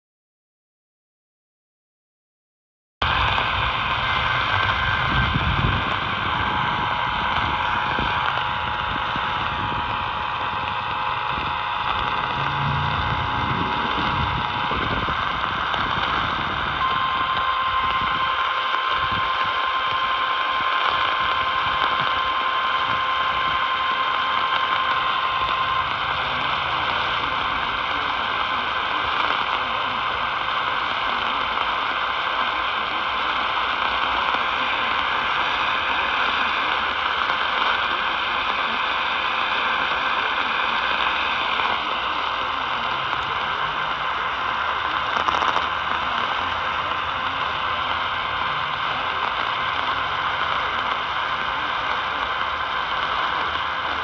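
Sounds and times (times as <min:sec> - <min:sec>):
radio static hiss: 0:03.0 - 0:54.0
steady alert tone: 0:12.1 - 0:14.8.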